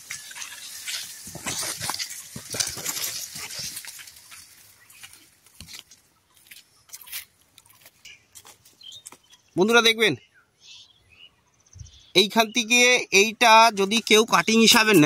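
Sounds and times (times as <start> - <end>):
grass rustling: 0.0 - 9.5.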